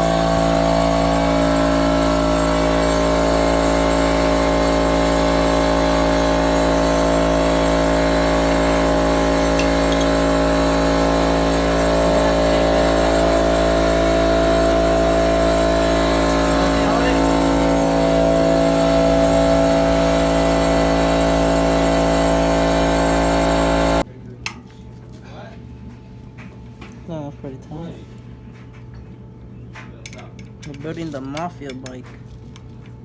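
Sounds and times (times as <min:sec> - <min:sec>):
machine motor humming: 0:00.0 - 0:24.1.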